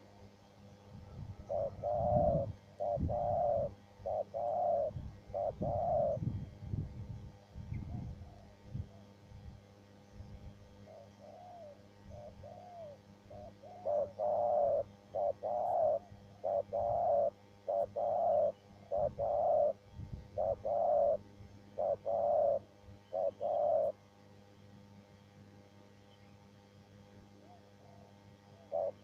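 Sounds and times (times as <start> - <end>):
dove cooing: 1.1 - 6.4, 10.8 - 24.0, 27.4 - 29.0.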